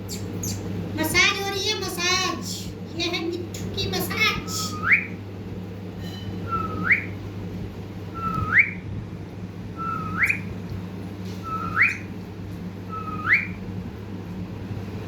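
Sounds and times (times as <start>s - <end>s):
steady low hum: 0.0s - 15.0s
parrot whistling: 4.2s - 5.2s, 6.4s - 7.2s, 8.1s - 8.8s, 9.8s - 10.6s, 11.4s - 12.1s, 12.9s - 13.6s.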